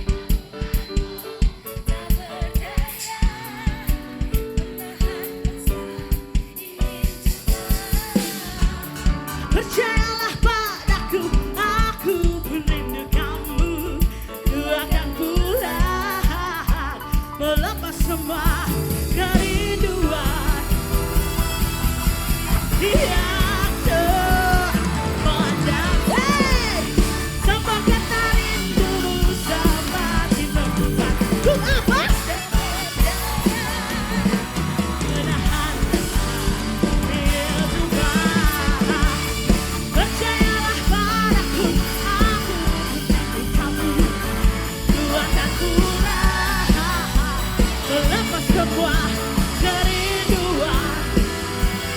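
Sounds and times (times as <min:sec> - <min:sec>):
live band playing: 0:00.0 - 0:51.9
steady drum beat: 0:00.0 - 0:51.9.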